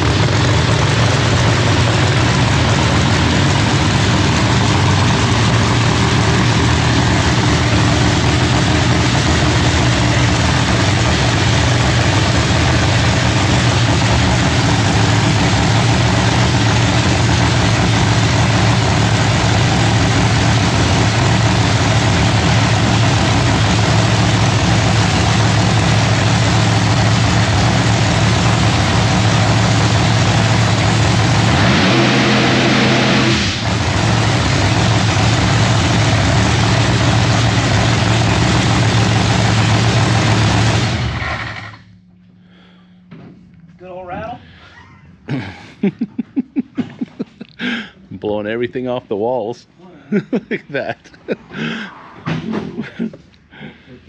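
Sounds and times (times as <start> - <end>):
drag-race engine idling loud: 0.0 - 42.8.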